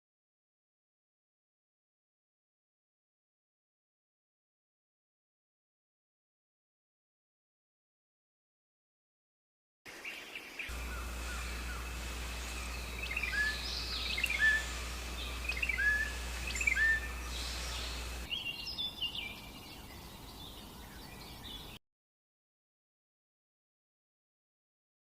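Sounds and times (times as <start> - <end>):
birds chirping: 9.9 - 21.8
steady low hum: 10.7 - 18.3.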